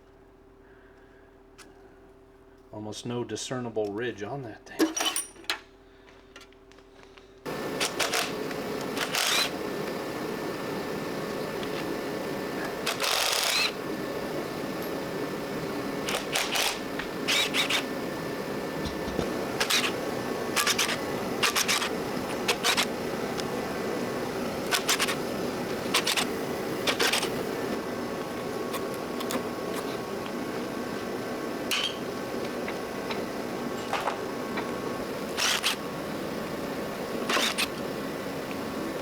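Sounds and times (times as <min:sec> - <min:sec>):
background hum: 0:00.0 - 0:39.0
metal tools clinking: 0:04.8 - 0:05.6.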